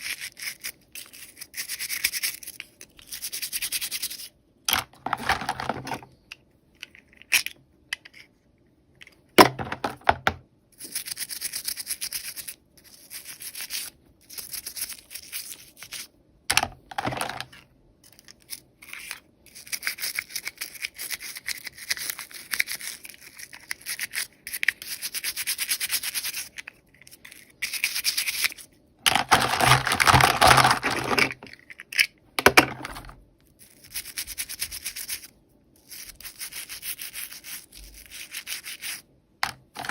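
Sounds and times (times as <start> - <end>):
hands crinkling plastic packaging: 27.0 - 32.0, 39.5 - 39.9.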